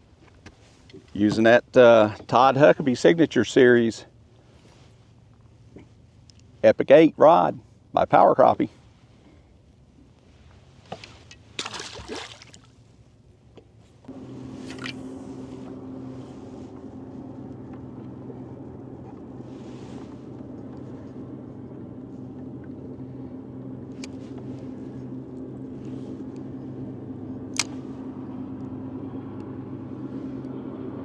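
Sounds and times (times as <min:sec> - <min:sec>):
boat motor running: 0:13.4 - 0:31.0.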